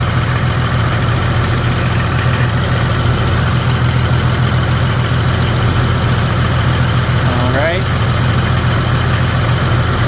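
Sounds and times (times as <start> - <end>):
car engine idling: 0.0 - 10.0
engine ticking noise: 0.0 - 10.0.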